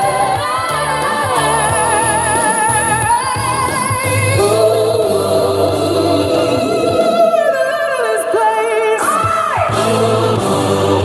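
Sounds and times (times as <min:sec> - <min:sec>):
steady bass line: 0:00.0 - 0:07.0, 0:09.7 - 0:11.0
wavering sung vocal: 0:00.0 - 0:11.0.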